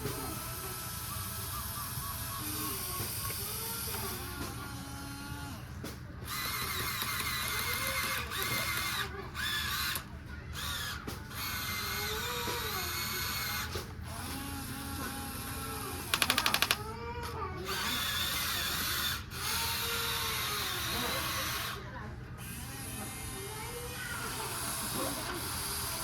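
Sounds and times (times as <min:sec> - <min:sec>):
small electric motors whirring: 0:00.0 - 0:26.0
rapid clicking: 0:16.1 - 0:16.8.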